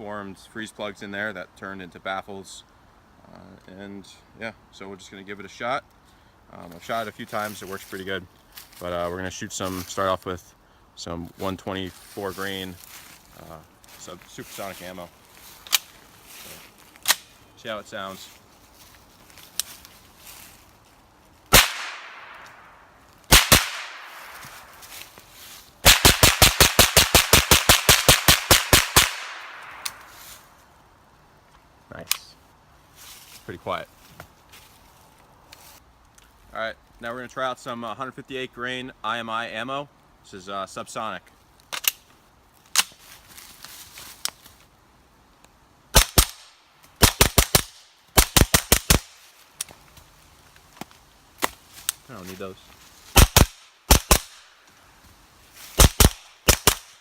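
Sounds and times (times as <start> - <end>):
suppressed gunshots: 21.5 - 22.5, 23.3 - 24.4.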